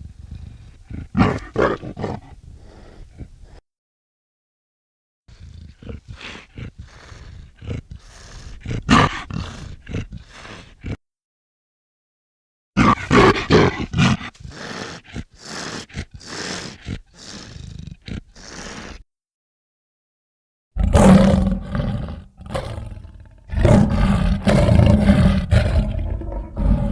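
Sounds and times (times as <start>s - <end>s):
leopard vocalising in rapid pulses: 5.3s - 11.0s, 12.8s - 19.0s.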